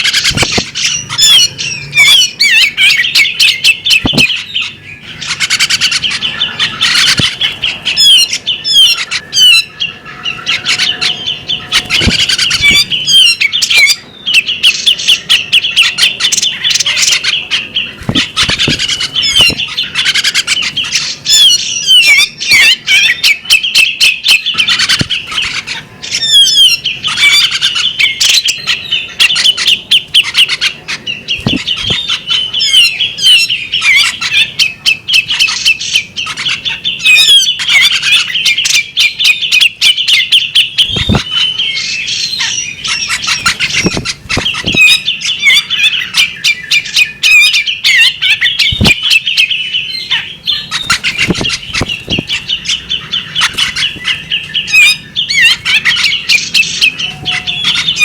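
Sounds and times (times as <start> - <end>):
bird singing: 0.0 - 58.0
harsh bird calls: 0.0 - 58.0
dull knocks: 4.0 - 4.4, 18.0 - 19.7, 31.4 - 32.0, 40.9 - 41.3, 43.4 - 44.9, 48.7 - 49.0, 50.8 - 52.4.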